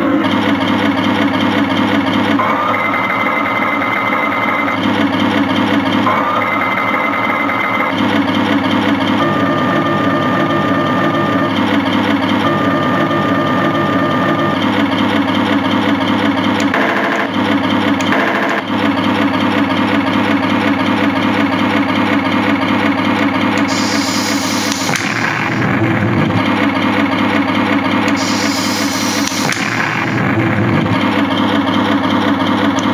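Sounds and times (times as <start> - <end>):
simulated tank engine through speaker: 0.0 - 32.9
thin whine: 23.5 - 32.9.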